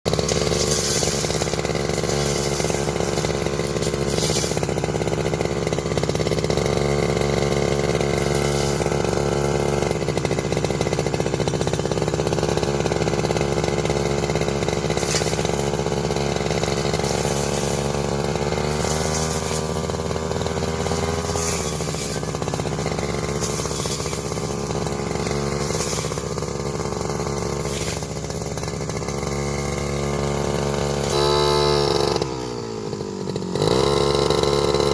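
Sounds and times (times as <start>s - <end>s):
grass cutter engine running: 0.1s - 34.9s.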